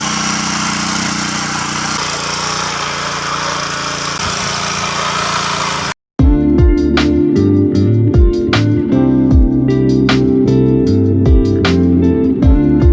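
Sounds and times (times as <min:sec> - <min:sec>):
rotary tiller engine running: 0:00.0 - 0:06.0.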